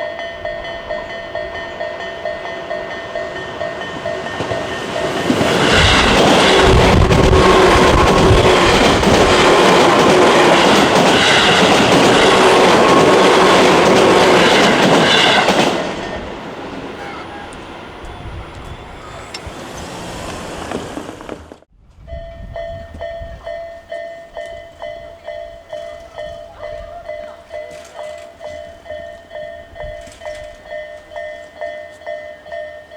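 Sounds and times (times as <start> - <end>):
electronic crossing warning bell: 0.0 - 6.5, 22.1 - 32.9
train wheels clattering on rails: 0.0 - 21.7, 22.7 - 32.9.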